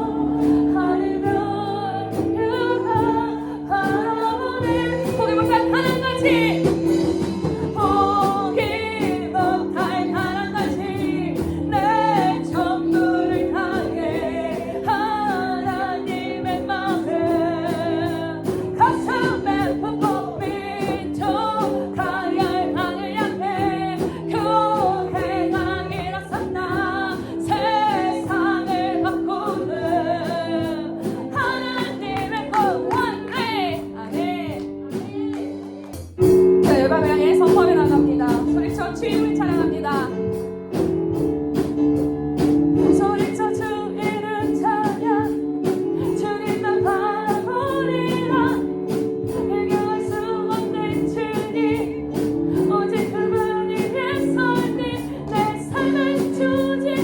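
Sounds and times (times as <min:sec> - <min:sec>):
instrumental backing music: 0:00.0 - 0:57.0
children's choir singing: 0:07.4 - 0:17.8.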